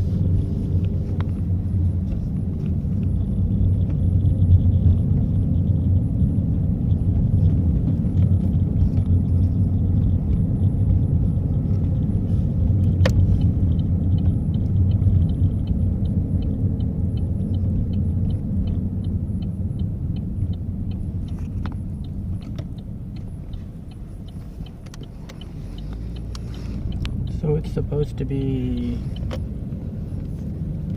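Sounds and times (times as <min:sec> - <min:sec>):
car engine and road noise: 0:00.0 - 0:30.9
faint even ticking: 0:13.0 - 0:30.4.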